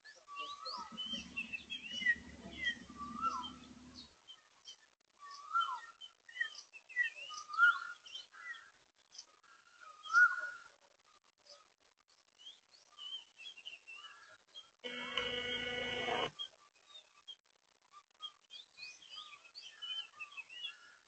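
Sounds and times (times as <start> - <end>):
birds whistling and chirping: 0.5 - 4.0.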